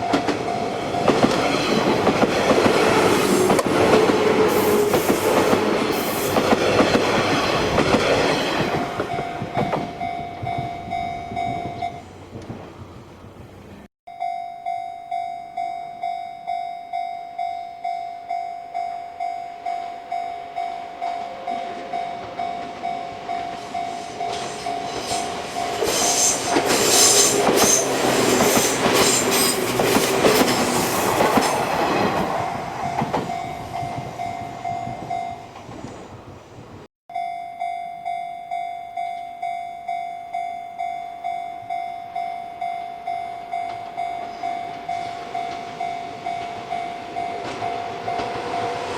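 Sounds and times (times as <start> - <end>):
level crossing warning bell ringing: 0.0 - 5.9, 8.9 - 12.2, 14.1 - 26.6, 32.4 - 35.6, 37.1 - 48.9
train wheels clattering over rails: 0.0 - 10.7, 21.7 - 34.2, 43.7 - 48.9.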